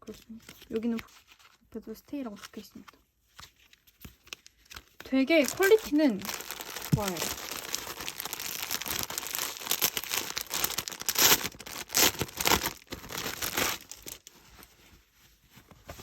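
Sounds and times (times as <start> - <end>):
packaging crinkling: 3.5 - 15.1.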